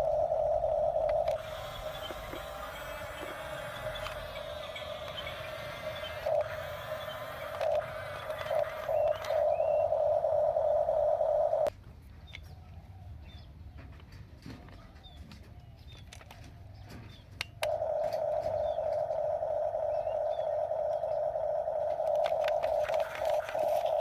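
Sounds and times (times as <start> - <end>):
dove-like coos: 0.0 - 11.7, 17.7 - 24.0
scattered clicks: 0.0 - 11.7, 17.4 - 24.0
birds chirping: 0.0 - 13.8, 15.0 - 24.0
small motor whining: 1.3 - 10.1.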